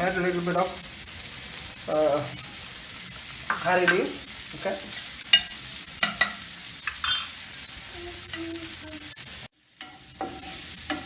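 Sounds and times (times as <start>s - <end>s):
onions frying in a pan: 0.0s - 11.0s
spoon clicking against pan: 5.3s - 7.4s.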